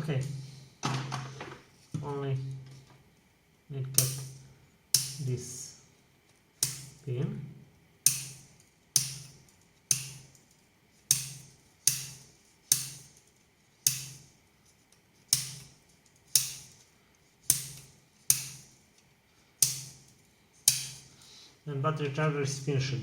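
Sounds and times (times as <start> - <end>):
wire cutters snipping pins: 8.1 - 10.5, 15.3 - 16.7.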